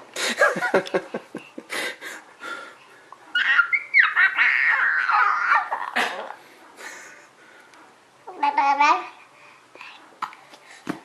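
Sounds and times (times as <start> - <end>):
child squealing babble: 3.4 - 6.0.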